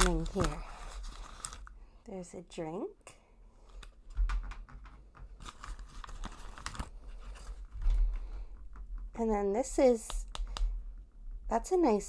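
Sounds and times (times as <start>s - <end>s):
plastic wrapper crinkling and tearing: 0.0s - 1.7s, 5.4s - 7.8s.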